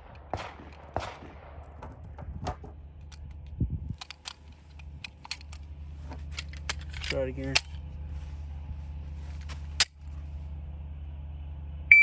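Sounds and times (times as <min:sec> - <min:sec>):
pistol shots: 0:00.0 - 0:02.2.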